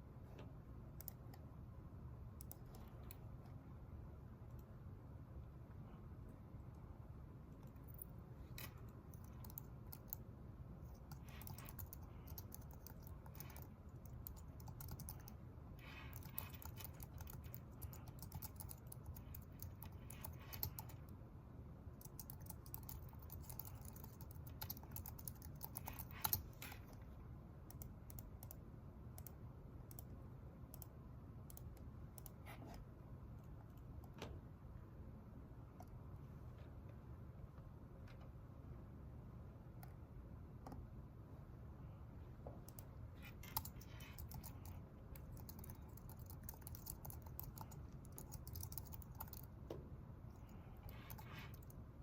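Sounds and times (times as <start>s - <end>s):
low room hum: 0.0s - 52.0s
typing on computer keyboard: 7.6s - 10.2s, 10.8s - 21.1s, 21.9s - 27.0s, 42.7s - 49.5s, 50.3s - 51.8s.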